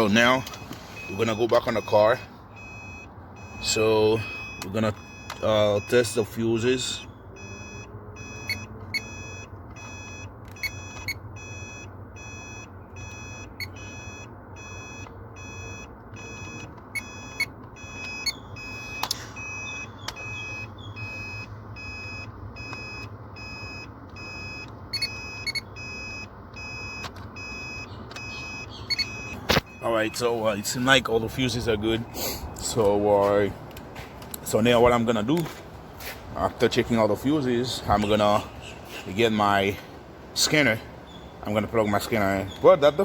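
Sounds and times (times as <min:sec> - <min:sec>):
circuit tester beeping: 0:00.0 - 0:32.0.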